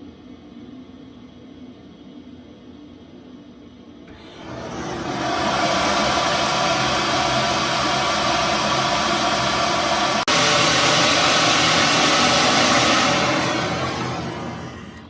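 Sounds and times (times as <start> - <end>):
faint hum: 0.0 - 15.0
loud rushing noise: 4.1 - 15.0.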